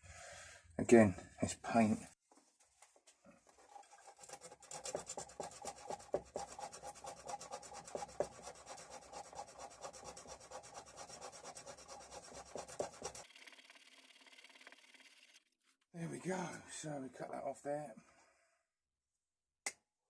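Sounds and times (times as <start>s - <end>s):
sandpaper rubbing on metal: 3.9s - 13.3s.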